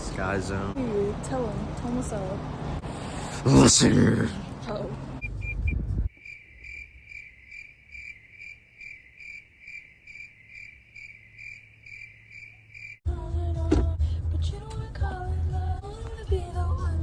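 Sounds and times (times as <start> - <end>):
cricket chirping: 5.2 - 13.0.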